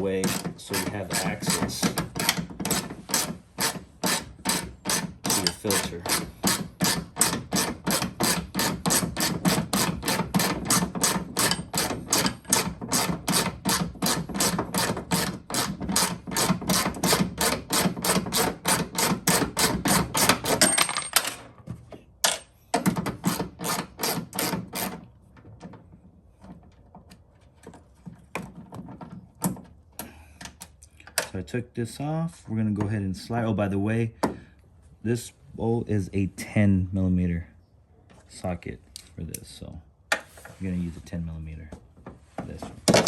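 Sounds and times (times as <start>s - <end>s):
scattered clicks and knocks: 0.0s - 31.4s.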